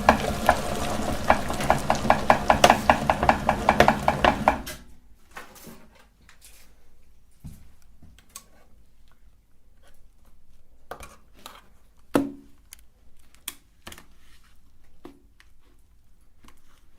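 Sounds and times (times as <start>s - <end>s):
candy crushed in meat grinder: 0.0s - 4.8s.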